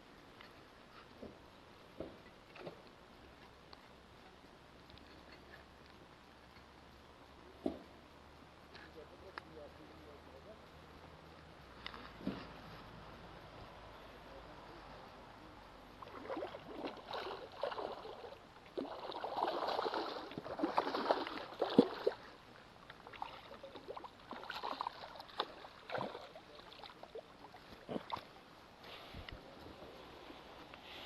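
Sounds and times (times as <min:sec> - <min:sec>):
water splashing and sloshing: 0:15.9 - 0:29.2.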